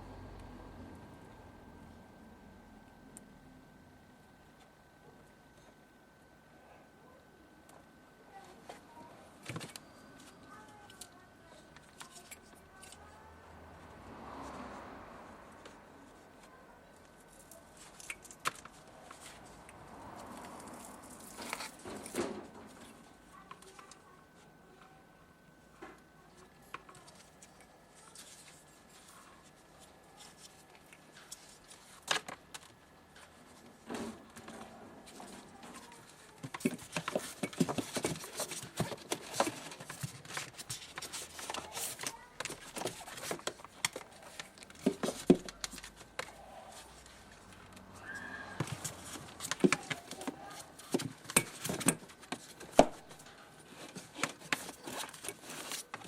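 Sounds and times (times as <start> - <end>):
parts clattering during repair: 32.1 - 48.0, 48.6 - 56.0.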